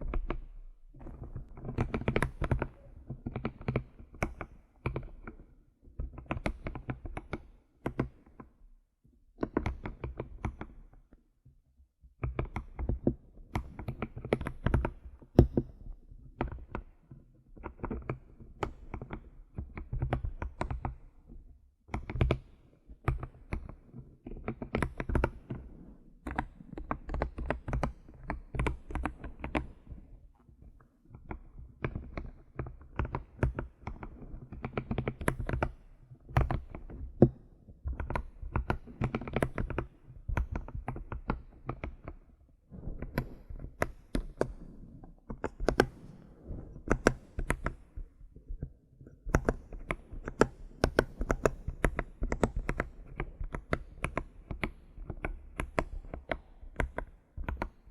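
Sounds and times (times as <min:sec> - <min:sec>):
computer keyboard typing: 0:45.3 - 0:46.0.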